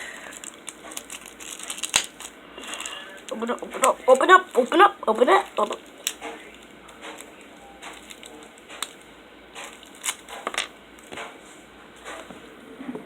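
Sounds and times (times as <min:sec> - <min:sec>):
packaging crinkling and crackling: 0:00.0 - 0:11.4
packaging sharp clicks and snaps: 0:00.2 - 0:04.8, 0:05.5 - 0:11.3.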